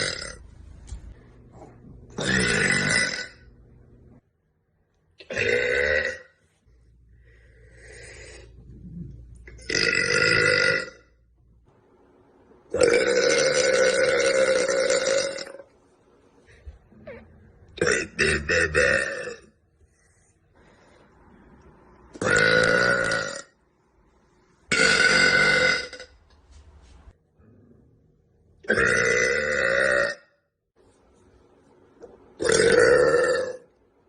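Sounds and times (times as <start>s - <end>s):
woman burping loudly: 0.0s - 0.4s, 2.2s - 3.5s, 5.2s - 6.4s, 9.5s - 11.1s, 12.8s - 15.7s, 16.9s - 19.6s, 22.2s - 23.6s, 24.7s - 26.1s, 28.6s - 30.3s, 32.4s - 33.7s.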